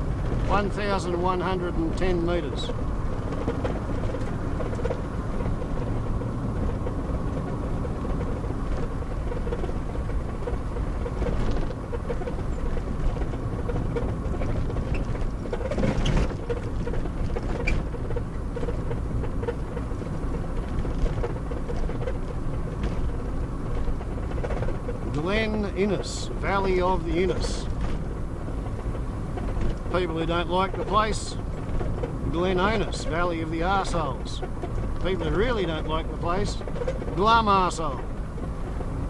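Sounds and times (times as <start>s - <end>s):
engine and road rumble: 0.0s - 39.0s.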